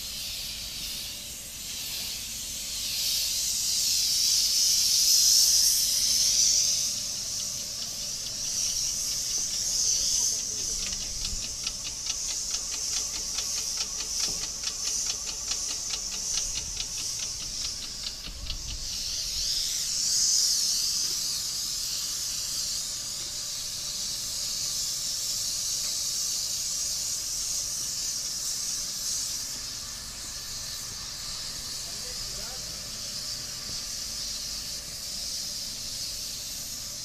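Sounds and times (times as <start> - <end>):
airless spray gun hissing: 0.0 - 37.0.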